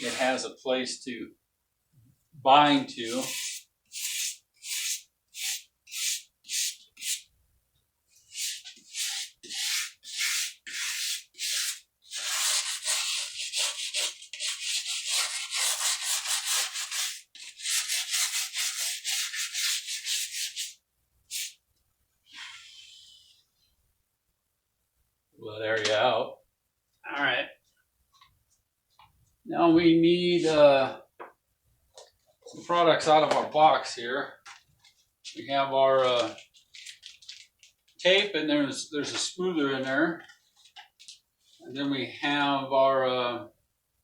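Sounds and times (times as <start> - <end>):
wire brush scrubbing plaster: 0.0 - 0.4, 3.0 - 7.3, 8.3 - 21.6.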